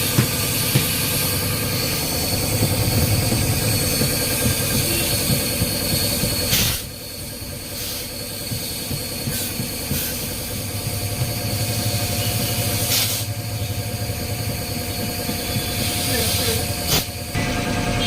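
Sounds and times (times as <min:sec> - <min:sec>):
loud air hiss: 0:00.0 - 0:13.7, 0:15.0 - 0:17.3
engine running: 0:00.0 - 0:18.0.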